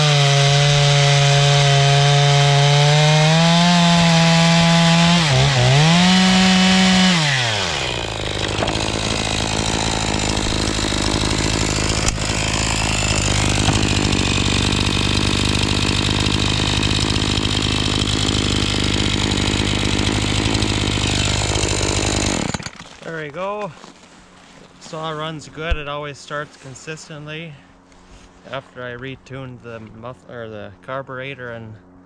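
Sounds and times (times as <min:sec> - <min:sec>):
chainsaw revving and idling: 0:00.0 - 0:23.2.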